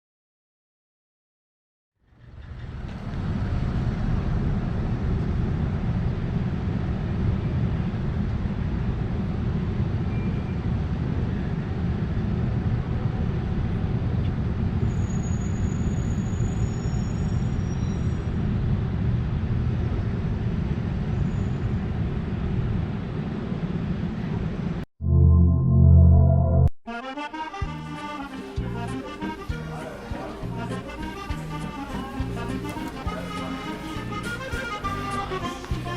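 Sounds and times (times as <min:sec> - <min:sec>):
low rumbling noise: 0:02.1 - 0:10.0, 0:18.4 - 0:26.7
faint high whistling tones: 0:14.9 - 0:18.3.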